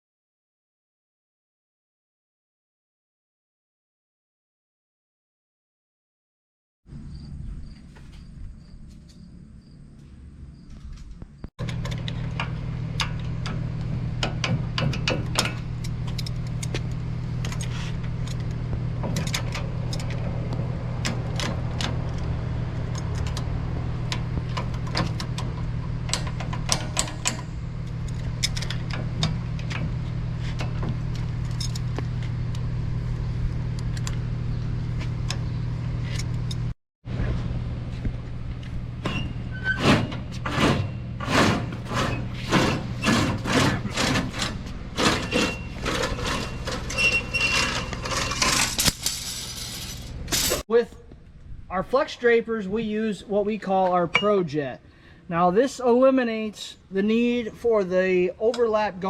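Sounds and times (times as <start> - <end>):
low machine hum: 6.9 - 51.8
metallic clinks of tools and bolts: 48.1 - 50.6.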